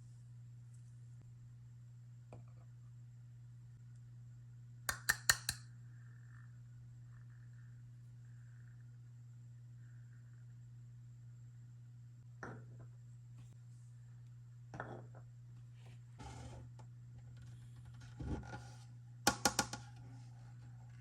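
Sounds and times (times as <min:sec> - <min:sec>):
low steady hum: 0:00.0 - 0:21.0
sharp clicks: 0:04.9 - 0:05.6.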